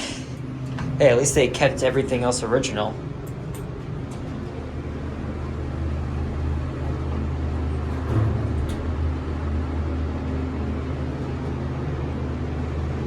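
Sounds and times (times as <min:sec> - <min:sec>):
ventilation fan humming: 0:00.0 - 0:13.0.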